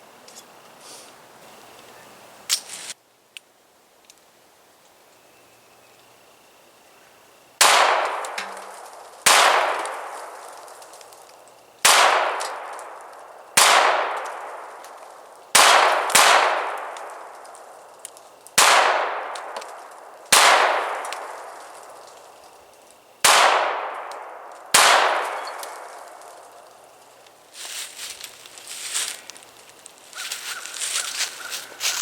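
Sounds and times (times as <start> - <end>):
pistol shots: 7.6 - 8.4, 9.2 - 10.4, 11.8 - 13.0, 13.6 - 14.7, 15.5 - 17.3, 18.6 - 19.6, 20.3 - 21.5, 23.2 - 26.2.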